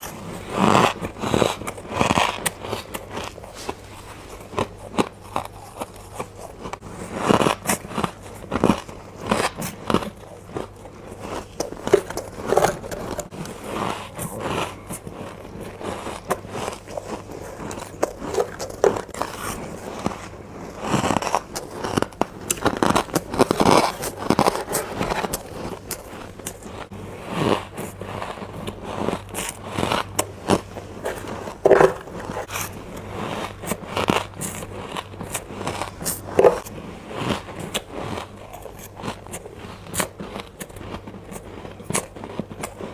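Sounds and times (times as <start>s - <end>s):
crunchy ice chewing: 0.0s - 42.9s.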